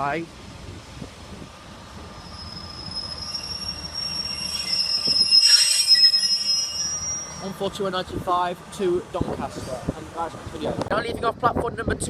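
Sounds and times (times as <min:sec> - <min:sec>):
train wheels squealing on rails: 0:01.9 - 0:07.9.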